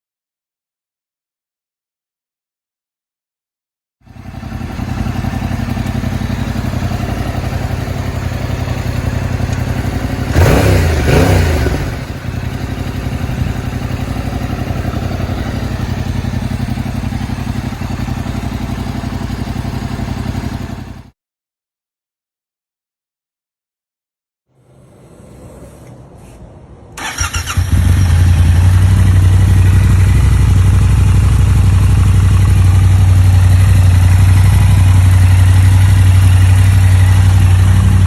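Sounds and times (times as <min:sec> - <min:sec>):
motorcycle engine idling: 0:04.0 - 0:21.1, 0:27.0 - 0:38.0.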